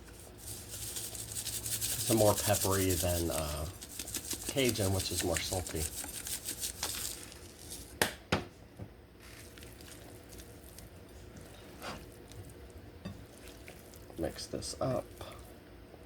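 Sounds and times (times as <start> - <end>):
rattle of shaker granules: 0.1 - 7.9.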